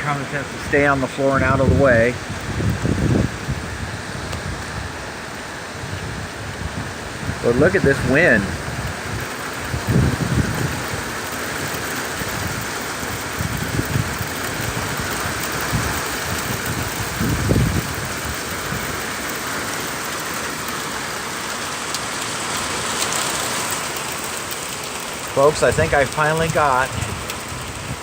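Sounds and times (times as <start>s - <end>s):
low thunder rumbles: 0.0s - 5.0s, 5.8s - 19.8s, 25.2s - 28.0s
heavy rain pouring: 0.0s - 28.0s.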